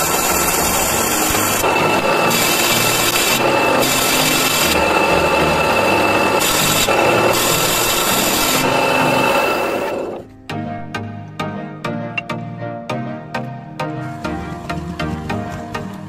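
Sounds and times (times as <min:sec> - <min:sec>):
power tool motor hum: 0:00.0 - 0:10.3
wood rasping: 0:00.0 - 0:10.3.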